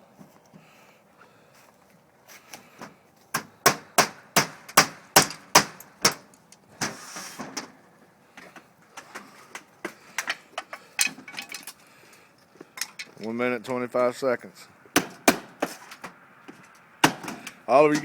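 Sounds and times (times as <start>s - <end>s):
short scraping rush: 6.8s - 7.6s.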